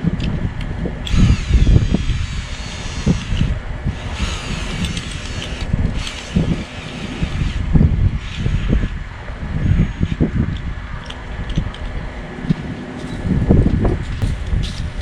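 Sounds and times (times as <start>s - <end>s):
wind buffeting microphone: 0.0s - 15.0s
cordless drill drilling ice: 1.1s - 9.0s.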